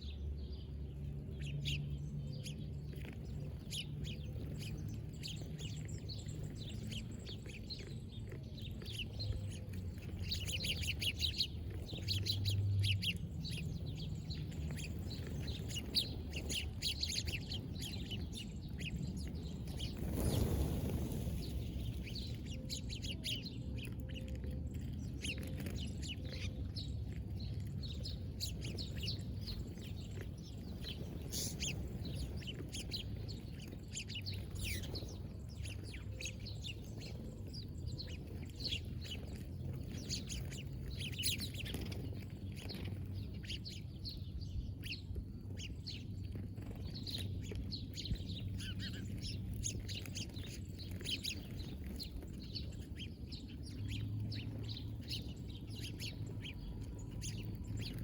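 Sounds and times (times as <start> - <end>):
small birds chirping: 0.0 - 58.0.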